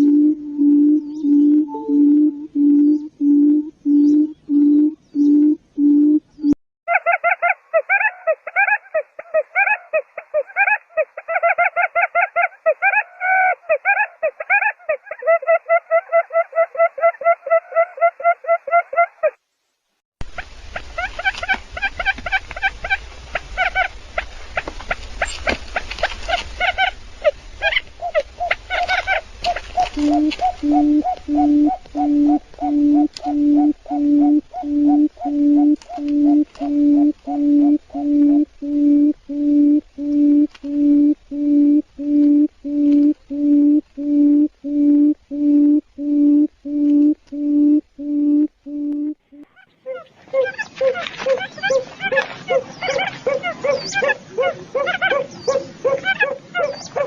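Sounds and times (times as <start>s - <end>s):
low pulsing beeper tone: 0.0s - 3.0s
steady low hum: 0.0s - 6.5s, 27.0s - 49.4s
quail chirping calls: 21.0s - 39.1s, 49.4s - 57.0s.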